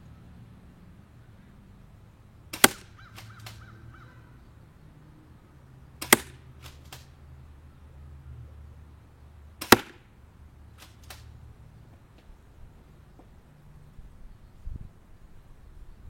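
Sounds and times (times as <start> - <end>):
airsoft shotgun shot snap: 2.5 - 3.6, 6.0 - 7.1, 9.6 - 10.0.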